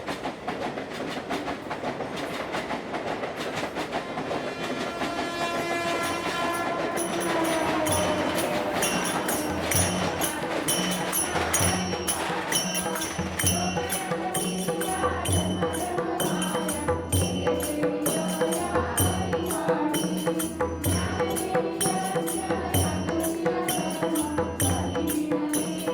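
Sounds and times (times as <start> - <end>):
held ringing tones: 6.0 - 25.9
jingling metal percussion: 6.0 - 25.9.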